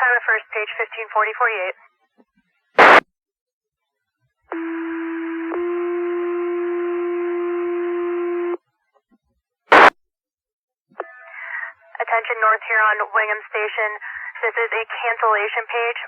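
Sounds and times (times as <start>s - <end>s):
radio static burst: 2.8s - 3.0s, 9.7s - 10.0s.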